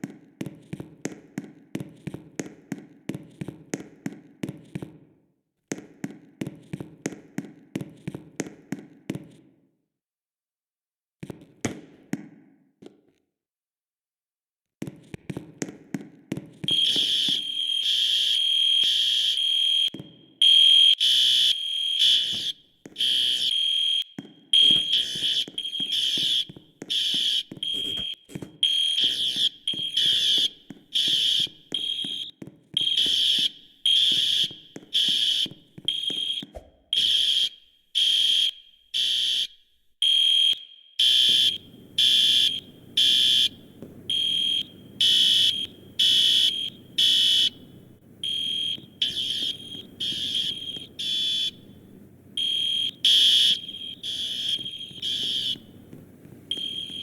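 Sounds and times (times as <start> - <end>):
fire alarm horns pulsing: 16.7 - 57.0.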